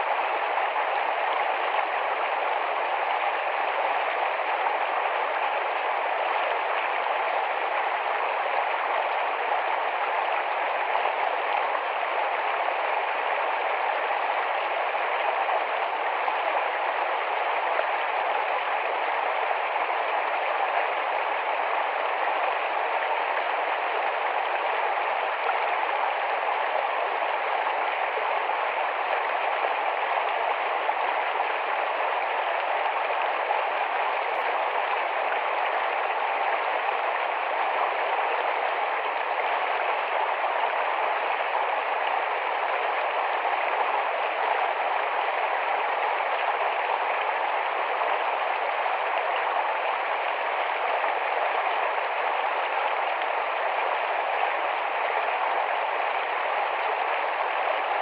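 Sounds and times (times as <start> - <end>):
stream running over stones: 0.0 - 58.0.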